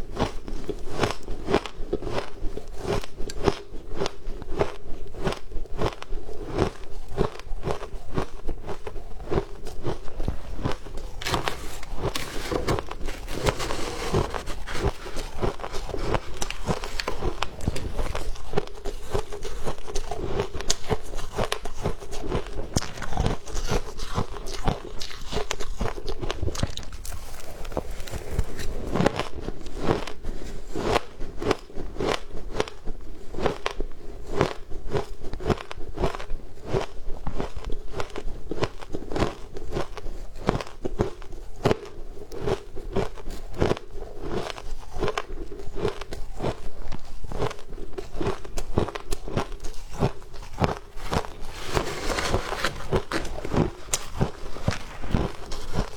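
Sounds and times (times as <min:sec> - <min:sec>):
shaved ice crunching: 0:10.7 - 0:19.9, 0:51.1 - 0:55.9.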